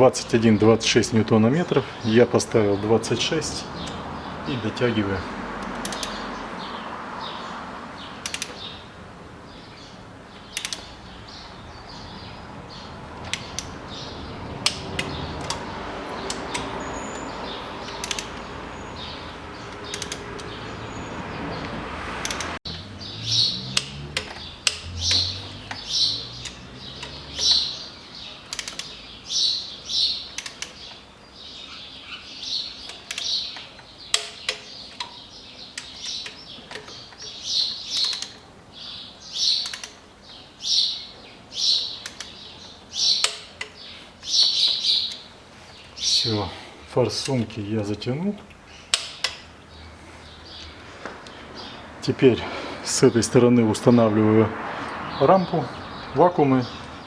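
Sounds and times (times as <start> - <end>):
small birds chirping: 0.0 - 57.0
wrench clicking: 5.6 - 6.2, 8.2 - 8.6, 10.5 - 11.0, 13.2 - 13.8, 14.6 - 16.8, 17.8 - 18.5, 19.7 - 20.6, 21.6 - 22.6, 23.7 - 27.7, 28.5 - 29.0, 30.3 - 31.0, 32.9 - 35.1, 35.8 - 38.4, 39.4 - 40.0, 42.0 - 42.4, 43.1 - 43.8, 48.9 - 49.5.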